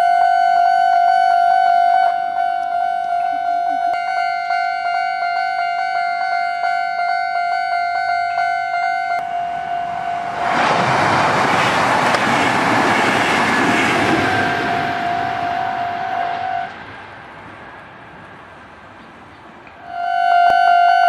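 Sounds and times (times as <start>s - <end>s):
level crossing warning bell: 0.0s - 16.7s, 19.8s - 21.0s
train wheels rumbling on rails: 9.2s - 20.0s.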